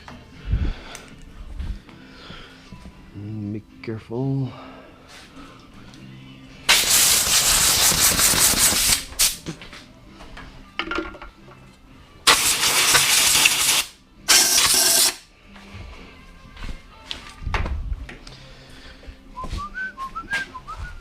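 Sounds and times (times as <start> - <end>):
compressed air hissing: 6.7 - 9.4, 12.2 - 15.2.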